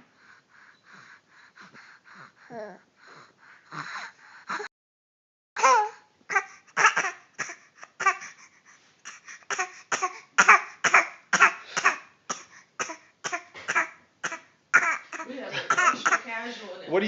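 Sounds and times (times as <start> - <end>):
boy fake coughing: 10.0 - 16.4.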